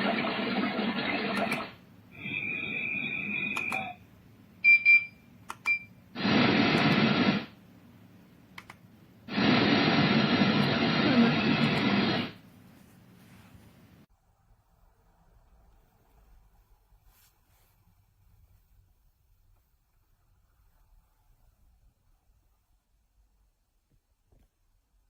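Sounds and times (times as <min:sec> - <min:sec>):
speaker hiss: 0:06.1 - 0:07.6, 0:09.2 - 0:14.1.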